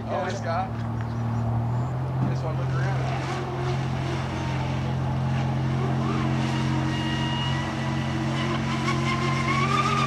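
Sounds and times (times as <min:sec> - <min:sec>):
steady low drone: 0:00.0 - 0:10.0
electric boat motor whine: 0:02.6 - 0:10.0.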